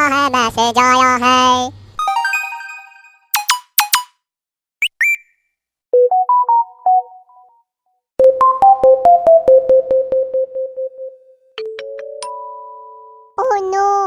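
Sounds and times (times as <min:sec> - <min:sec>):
phone notification tones: 0:02.0 - 0:04.1, 0:06.0 - 0:07.5, 0:08.2 - 0:13.4.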